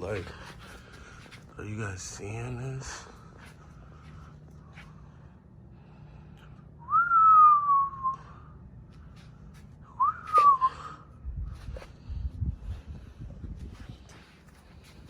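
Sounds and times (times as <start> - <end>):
man whistling: 6.8 - 8.5, 9.9 - 11.0.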